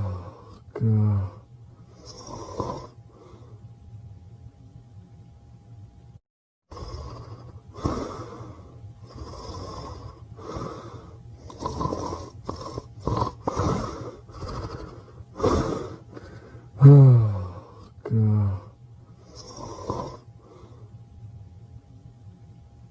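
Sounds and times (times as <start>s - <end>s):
dog snoring: 0.0s - 3.0s, 6.7s - 20.8s.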